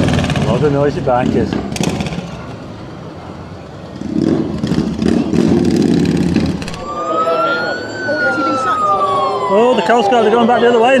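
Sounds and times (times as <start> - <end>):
motorcycles passing revving: 0.0 - 11.0
emergency siren wailing: 6.6 - 11.0.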